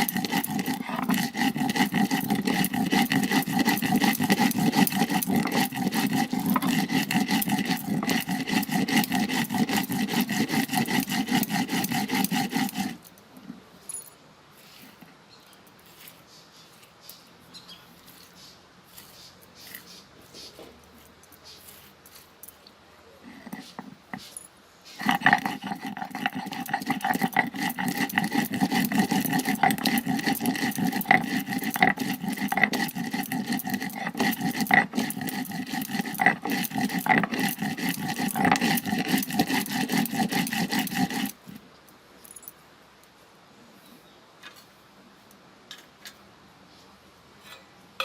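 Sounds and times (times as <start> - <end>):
grinding with rough scraping: 0.0 - 13.1, 23.2 - 24.2, 24.9 - 41.6.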